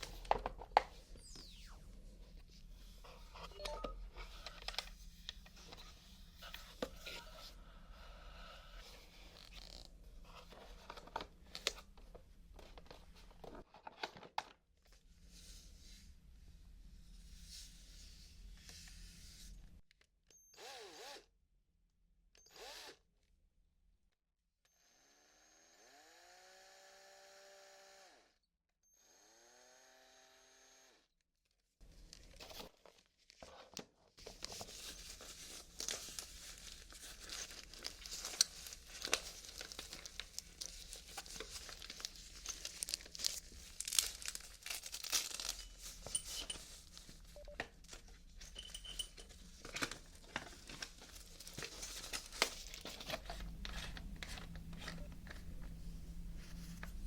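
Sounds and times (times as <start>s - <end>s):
electric drill motor whirring: 20.4s - 21.3s, 22.4s - 23.0s, 24.7s - 28.3s, 28.9s - 31.0s
crackling and crinkling with clicks: 31.8s - 57.0s.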